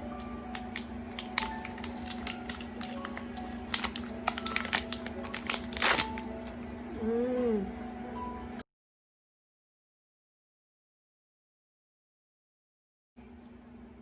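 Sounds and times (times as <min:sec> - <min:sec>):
plastic packaging crinkling: 0:00.0 - 0:06.6.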